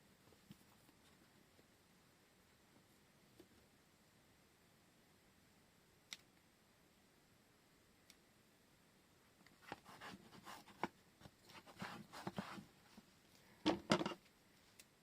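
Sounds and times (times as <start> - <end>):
paper rustling and scraping: 11.5 - 12.7.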